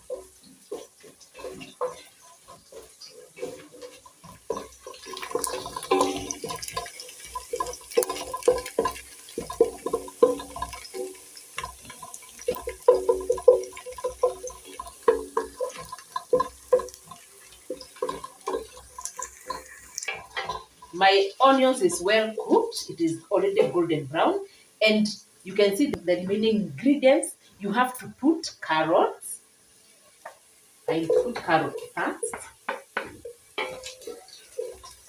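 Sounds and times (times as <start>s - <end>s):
crackles and pops: 0.0s - 22.8s, 30.2s - 35.0s
onions sizzling in hot oil: 0.0s - 35.0s.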